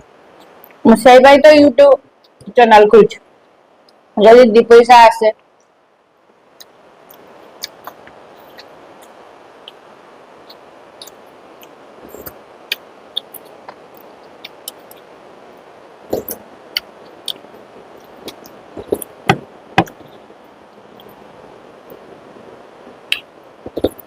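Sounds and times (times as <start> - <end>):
eating mouth clicks and smacks: 6.6 - 9.8, 16.1 - 19.1.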